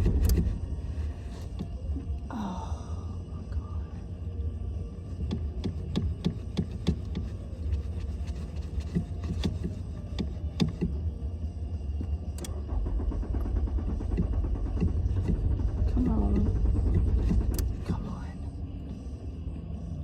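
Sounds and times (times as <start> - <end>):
car engine cranking without starting: 0.0 - 3.0, 5.1 - 19.1
heavy low rumble: 0.0 - 20.0.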